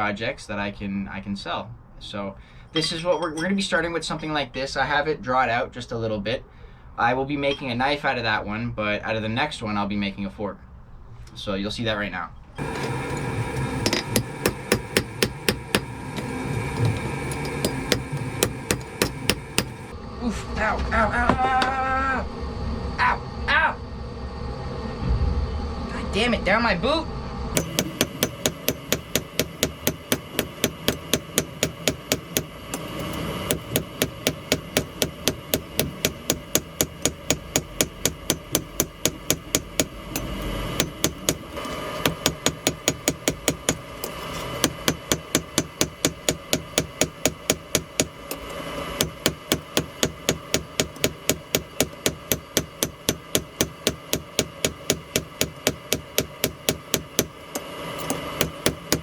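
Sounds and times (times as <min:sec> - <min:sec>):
hammer striking metal on anvil: 0:12.6 - 0:19.9, 0:27.6 - 0:59.0.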